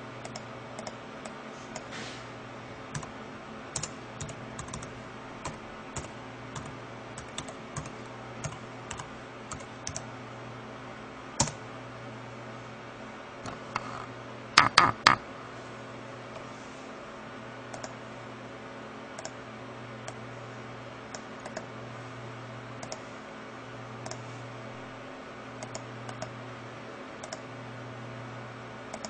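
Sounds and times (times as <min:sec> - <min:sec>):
low electrical hum: 0:00.0 - 0:29.0
keyboard keys clicking: 0:03.8 - 0:10.0.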